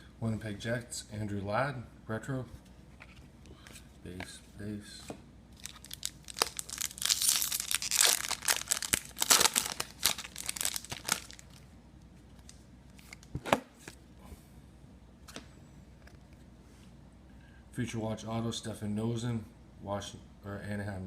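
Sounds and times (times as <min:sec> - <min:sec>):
wrapper tearing and crinkling: 0:05.6 - 0:11.6.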